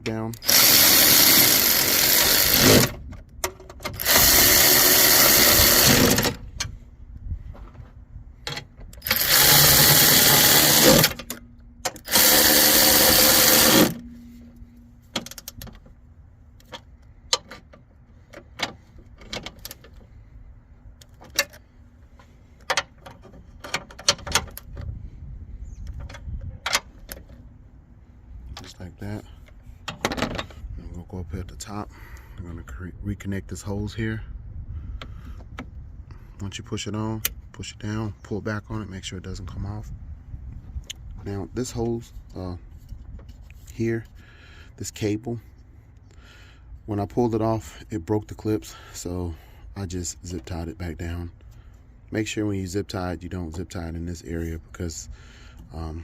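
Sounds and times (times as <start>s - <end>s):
parts clicking and knocking: 0.0s - 6.8s, 7.5s - 20.2s, 21.0s - 24.9s, 25.8s - 27.4s, 29.4s - 30.6s
power drill whirring: 0.4s - 3.0s, 3.9s - 6.4s, 9.0s - 14.1s.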